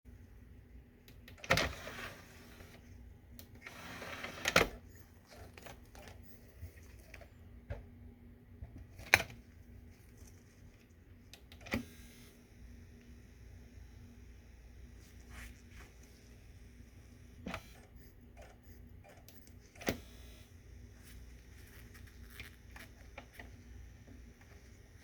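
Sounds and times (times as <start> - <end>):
faint steady hum: 0.1 - 25.0
disc tray motor whirring: 3.6 - 4.9, 11.7 - 12.5, 19.8 - 20.7.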